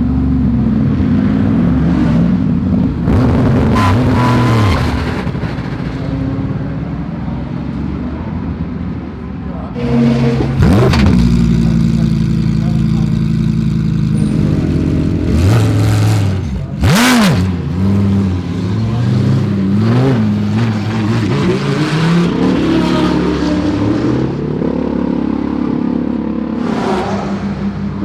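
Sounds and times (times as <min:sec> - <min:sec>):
race car engines accelerating: 0:00.0 - 0:28.0
race car passing by: 0:26.6 - 0:28.0.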